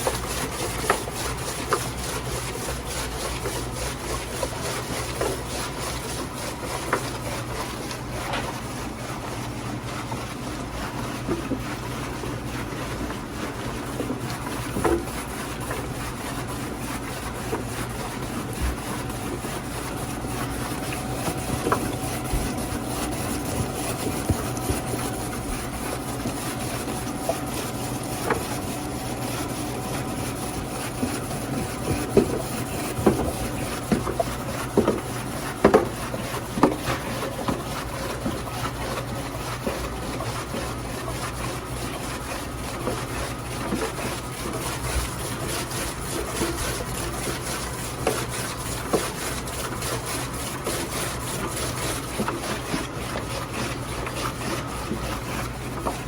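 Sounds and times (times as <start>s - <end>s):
food slicing machine humming: 0.0s - 56.0s
rasping scraping cutting: 14.1s - 56.0s.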